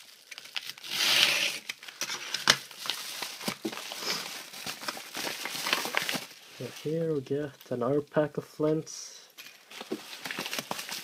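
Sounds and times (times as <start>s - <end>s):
package ripping open: 0.0s - 6.4s, 9.4s - 11.0s
packaging crinkling: 0.0s - 6.9s, 9.4s - 11.0s.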